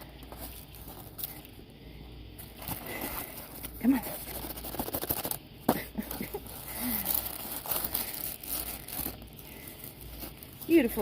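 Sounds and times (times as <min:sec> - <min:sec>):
packaging tearing and crinkling: 0:02.4 - 0:05.4, 0:06.1 - 0:11.0.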